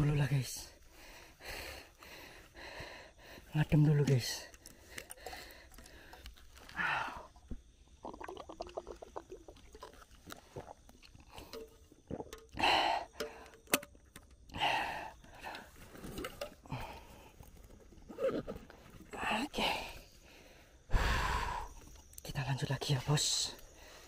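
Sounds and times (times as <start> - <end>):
man breathing heavily: 0.8 - 3.5, 19.6 - 21.8.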